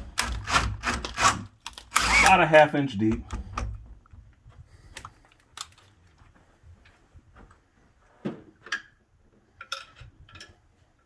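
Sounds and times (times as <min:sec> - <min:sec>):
hand tools clicking and knocking: 0:00.0 - 0:02.5.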